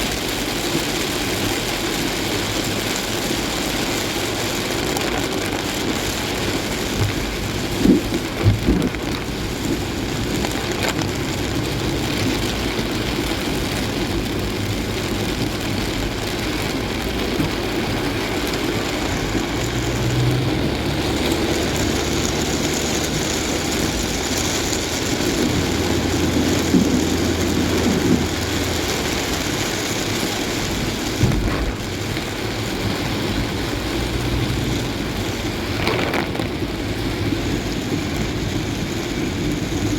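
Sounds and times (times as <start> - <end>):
heavy rain: 0.0 - 39.9
road noise: 0.0 - 39.9
low engine hum: 0.1 - 39.9
short thumps: 31.2 - 32.3.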